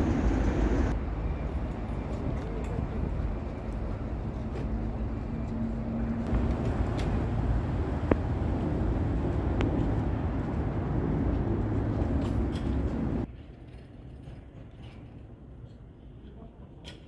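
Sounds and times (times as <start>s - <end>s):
vehicle engines passing: 0.0s - 1.1s, 4.1s - 13.3s.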